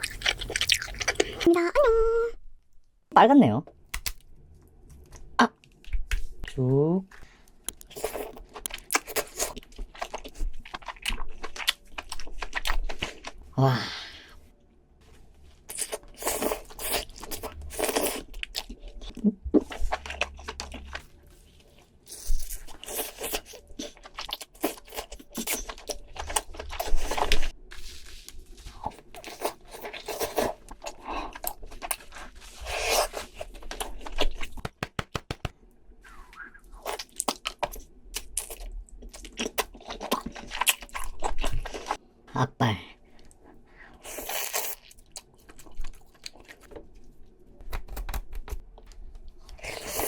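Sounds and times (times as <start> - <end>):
chewing: 0.0 - 1.5, 7.7 - 13.4, 36.8 - 42.0.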